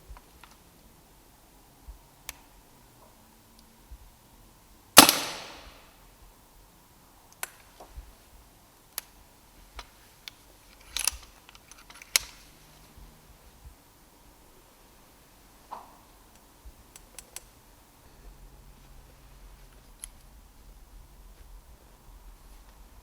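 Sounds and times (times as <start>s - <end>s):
air rifle shot: 5.0s - 5.8s.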